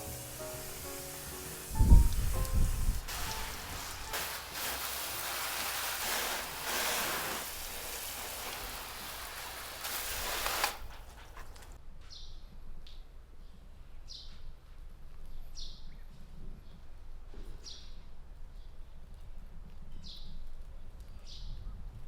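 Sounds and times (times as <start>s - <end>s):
water spraying from a hose: 0.0s - 11.8s.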